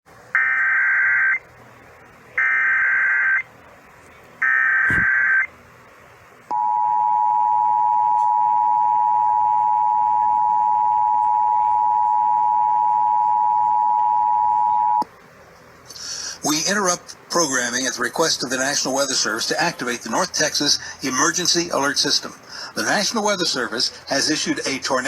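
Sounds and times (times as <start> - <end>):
steady dual-tone attention signal: 4.4 - 5.5, 6.5 - 15.0
warbling data tone bursts: 4.4 - 5.5
knock: 4.9 - 5.1.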